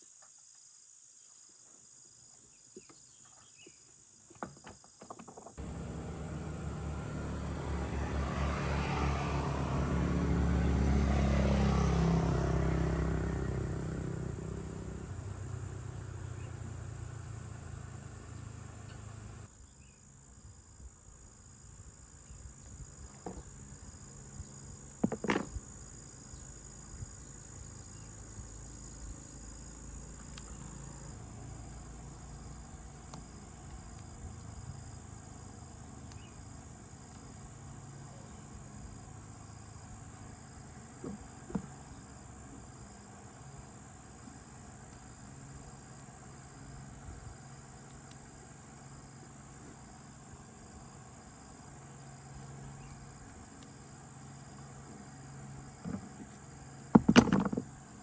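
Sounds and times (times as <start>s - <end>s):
crickets chirping: 0.0s - 58.0s
motor humming: 5.6s - 8.2s.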